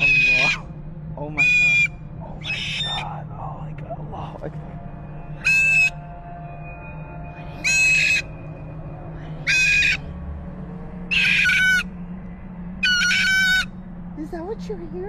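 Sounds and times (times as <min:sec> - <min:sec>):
parrot screeching: 0:00.0 - 0:00.6, 0:01.4 - 0:03.2, 0:05.4 - 0:06.0, 0:07.4 - 0:08.4, 0:09.4 - 0:10.1, 0:11.1 - 0:11.9, 0:12.8 - 0:13.7.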